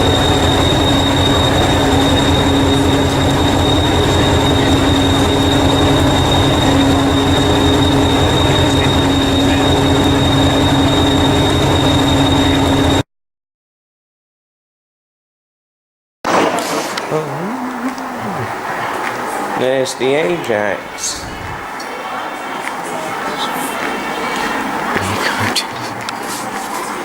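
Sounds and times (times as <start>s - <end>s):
high-pitched whine: 0.0s - 13.0s
train rumbling: 0.0s - 13.0s, 16.3s - 27.0s.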